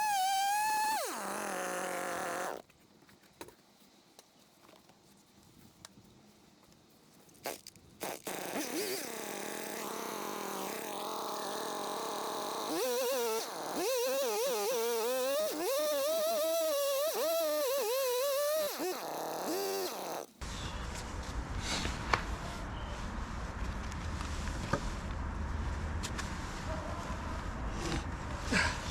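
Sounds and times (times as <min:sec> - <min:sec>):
chainsaw ripping a log: 0:00.0 - 0:02.6, 0:07.5 - 0:20.3.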